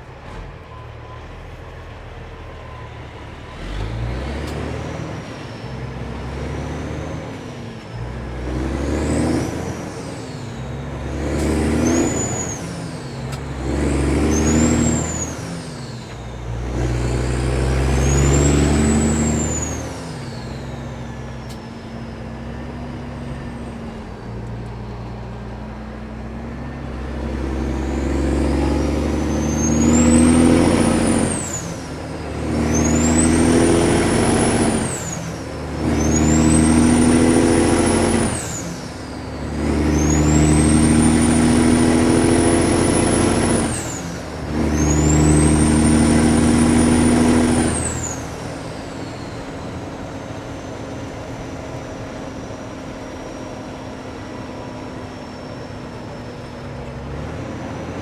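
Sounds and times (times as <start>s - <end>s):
diesel truck engine shifting gears: 0.0s - 58.0s
turbo whistle: 27.7s - 31.9s.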